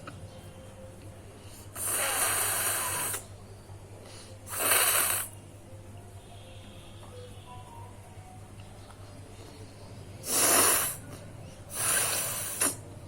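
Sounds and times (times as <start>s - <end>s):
person blowing nose: 1.8s - 3.2s, 4.5s - 5.4s, 10.2s - 11.0s, 11.7s - 12.8s.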